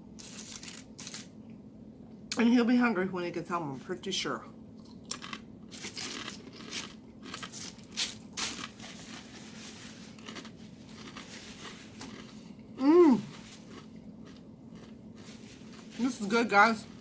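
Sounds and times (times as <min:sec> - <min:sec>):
chips crunching: 0:00.2 - 0:01.3, 0:04.8 - 0:12.5, 0:13.3 - 0:17.0
soft chewing: 0:04.8 - 0:17.0.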